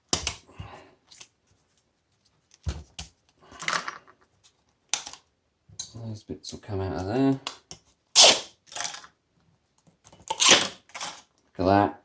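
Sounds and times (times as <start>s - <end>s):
plastic pieces knocking: 8.6s - 9.1s.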